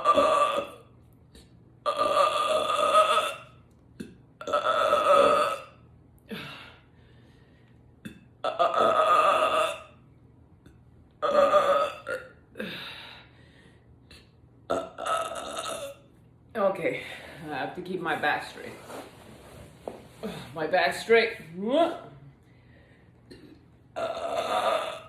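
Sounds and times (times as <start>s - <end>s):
woman belching: 0.0s - 0.8s, 1.9s - 3.5s, 4.4s - 5.7s, 8.4s - 9.9s, 11.2s - 12.4s, 14.7s - 16.0s, 23.3s - 25.0s.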